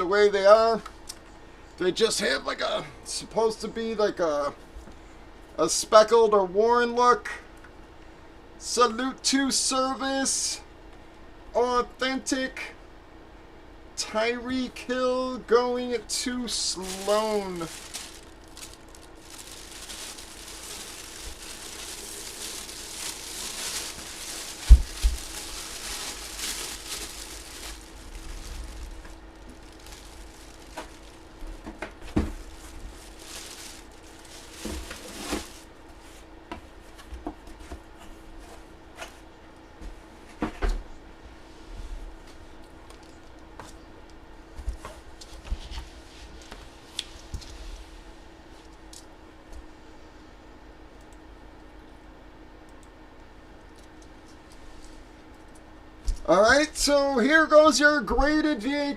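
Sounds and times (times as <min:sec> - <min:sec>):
faint steady hum: 0:00.0 - 0:58.9
packaging rustling and crinkling: 0:16.6 - 0:35.8.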